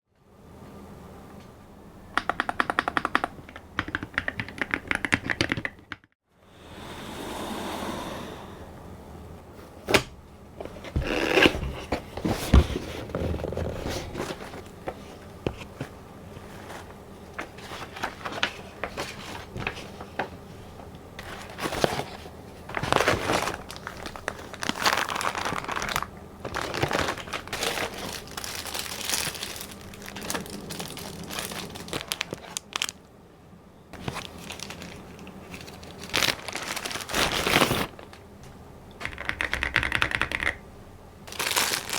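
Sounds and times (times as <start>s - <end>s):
plastic and paper crinkling: 10.7s - 20.4s, 21.2s - 33.0s, 34.0s - 38.3s, 41.3s - 41.9s.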